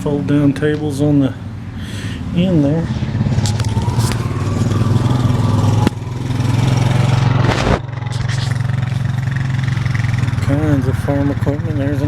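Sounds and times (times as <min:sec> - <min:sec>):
engine running steadily: 0:00.0 - 0:12.0.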